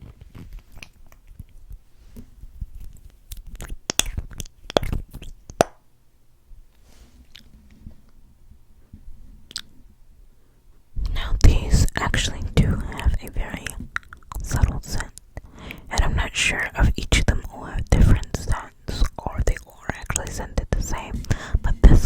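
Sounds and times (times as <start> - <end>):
wet lip smacks and clicks: 0.3 - 1.6, 2.8 - 5.8, 7.3 - 7.5, 9.5 - 9.7, 13.0 - 16.1, 19.0 - 21.4.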